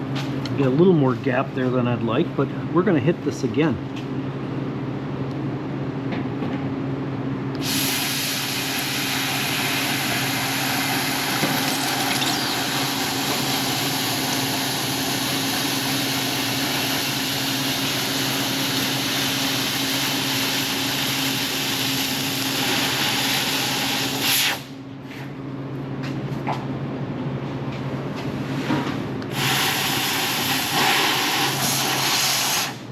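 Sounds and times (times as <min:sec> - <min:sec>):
low machine hum: 0:00.0 - 0:23.9
laser cutter hissing: 0:07.6 - 0:24.7, 0:29.3 - 0:32.9.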